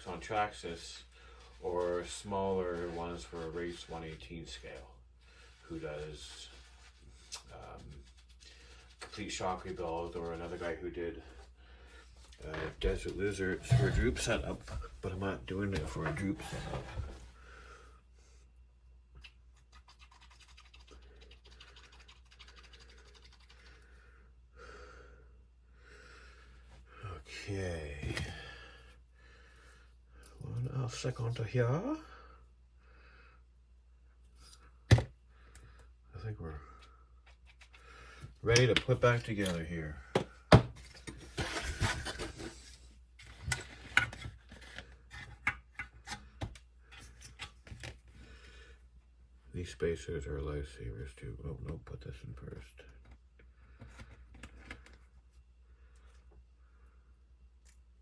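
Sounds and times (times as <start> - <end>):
parts rubbing and rustling: 0.1 - 11.4, 12.2 - 17.3, 38.6 - 48.2.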